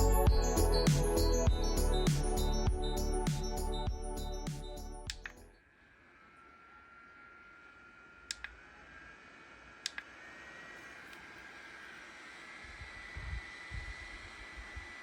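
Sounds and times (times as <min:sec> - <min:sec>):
background music: 0:00.0 - 0:05.5
electric fan whining: 0:05.8 - 0:15.0.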